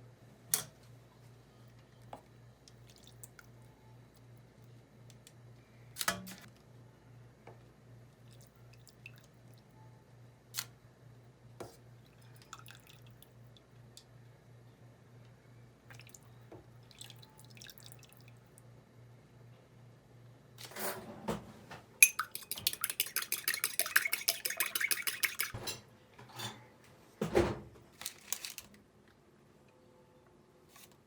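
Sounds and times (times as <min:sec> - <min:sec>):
whisk clicking against bowl: 0:22.0 - 0:25.6
kitchen utensil clatter: 0:22.0 - 0:25.8.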